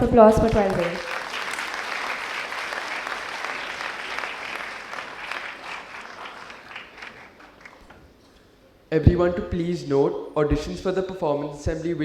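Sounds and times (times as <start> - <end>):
children clapping: 0.3 - 8.1.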